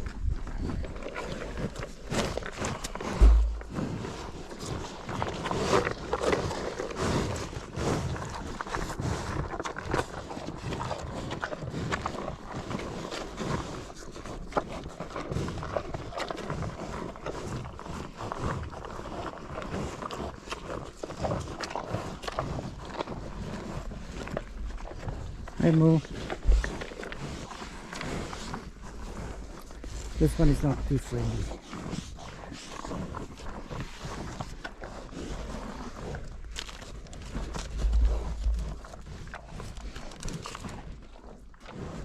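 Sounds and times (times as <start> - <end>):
hooves shuffling: 0.0 - 6.4, 21.3 - 42.0
cattle crunching feed: 0.0 - 42.0
low thump: 3.1 - 4.0.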